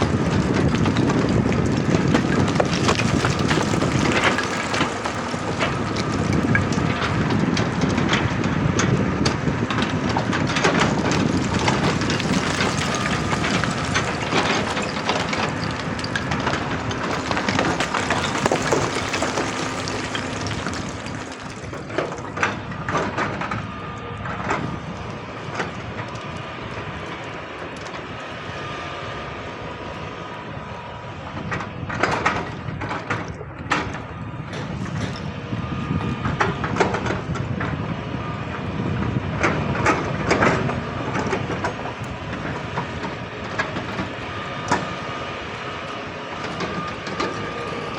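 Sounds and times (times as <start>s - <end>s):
excavator knocks and scraping: 0.0s - 23.5s
excavator engine running: 0.0s - 26.5s.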